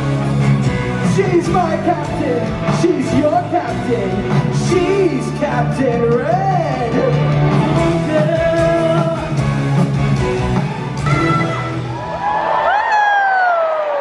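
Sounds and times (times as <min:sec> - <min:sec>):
live rock band music: 0:00.0 - 0:12.2
person singing: 0:01.1 - 0:09.4.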